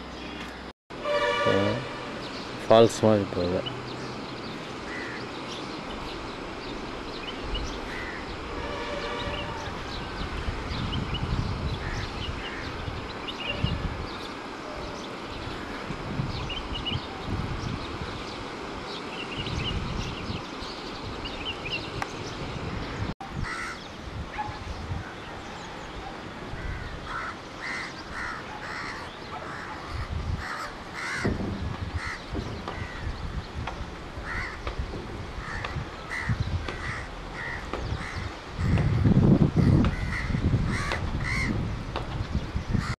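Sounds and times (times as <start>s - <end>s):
crows cawing: 4.9s - 5.3s, 7.9s - 8.3s, 11.8s - 12.8s, 23.4s - 23.8s, 26.6s - 31.4s, 32.0s - 33.2s, 34.2s - 34.7s, 35.4s - 41.5s
low rumbling noise: 29.8s - 40.8s.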